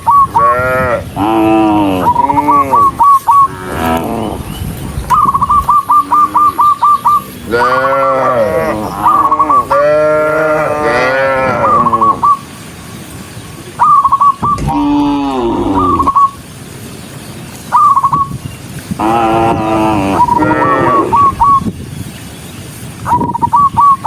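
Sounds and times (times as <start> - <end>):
cattle mooing: 0.4 - 2.9, 3.5 - 4.5, 7.5 - 12.0, 14.6 - 16.2, 19.0 - 21.2
high whistle-like notes: 13.8 - 16.4.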